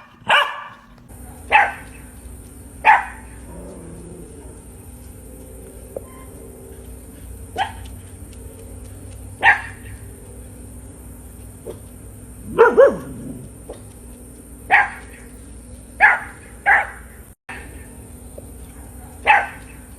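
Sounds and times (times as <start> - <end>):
dog barking: 0.0 - 2.2, 2.8 - 4.7, 7.5 - 8.0, 9.4 - 10.1, 11.6 - 13.9, 14.7 - 15.2, 16.0 - 17.6, 18.6 - 19.9.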